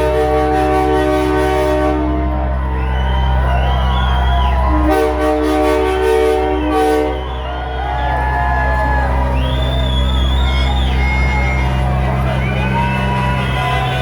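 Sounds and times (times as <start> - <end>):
air horn chord blasts: 0.0 - 2.6, 4.6 - 7.6
low engine hum: 0.0 - 14.0
people whooping: 0.0 - 14.0.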